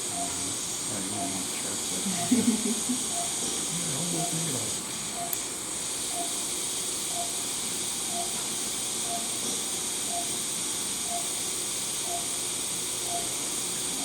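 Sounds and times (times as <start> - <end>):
patient monitor beeping: 0.0 - 1.5, 2.1 - 3.4, 4.0 - 5.4, 6.1 - 6.4, 7.0 - 7.4, 8.1 - 8.4, 9.0 - 9.4, 10.1 - 10.4, 11.0 - 11.4, 12.0 - 12.4, 13.0 - 13.4
steady high hiss: 0.0 - 14.0.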